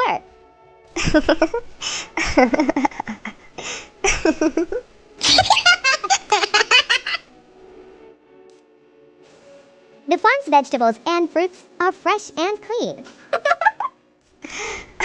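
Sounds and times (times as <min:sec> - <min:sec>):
people laughing and giggling: 0:01.0 - 0:07.3, 0:13.2 - 0:14.0.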